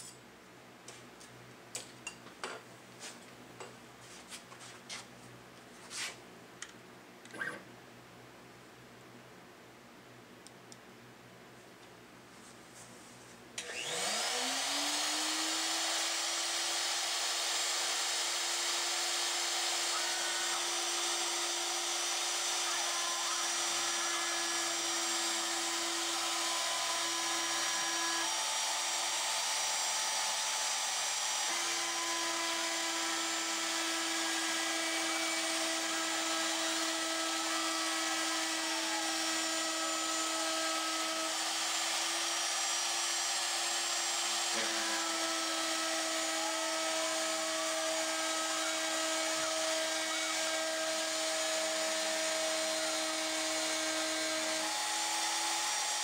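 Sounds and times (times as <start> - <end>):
router spindle hiss and hum: 13.6 - 56.0.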